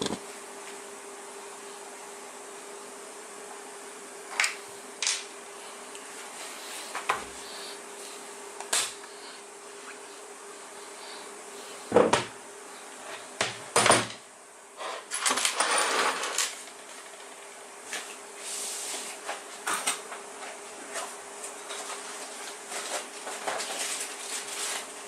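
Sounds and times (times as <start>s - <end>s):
faint steady hum: 0.0s - 25.0s
parts rattling and rustling: 15.0s - 18.1s.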